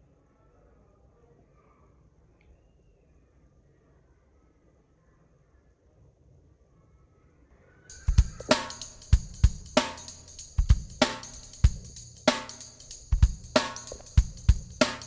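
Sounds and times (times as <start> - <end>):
background music with drum beat: 7.9 - 15.0.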